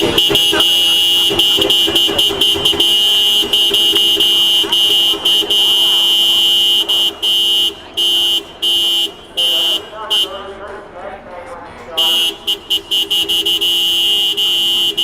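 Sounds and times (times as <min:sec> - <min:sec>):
car horn honking: 0:00.0 - 0:10.6, 0:11.9 - 0:15.0.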